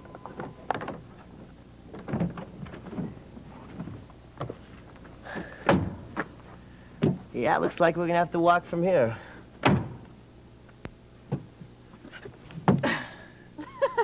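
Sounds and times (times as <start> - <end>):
knocks and rustles: 0.0 - 7.3.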